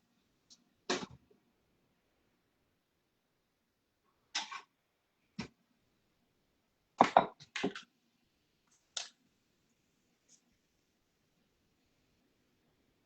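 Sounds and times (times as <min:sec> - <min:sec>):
kitchen things clicking and knocking: 0:07.0 - 0:07.9.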